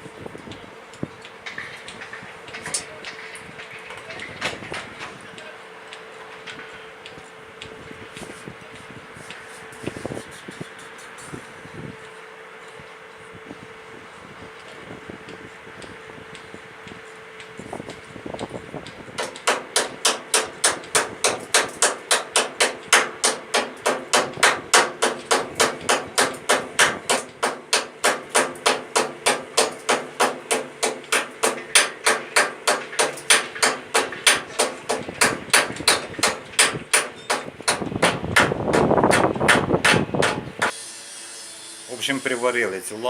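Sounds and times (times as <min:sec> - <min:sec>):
hammer striking steel: 0:19.2 - 0:40.8.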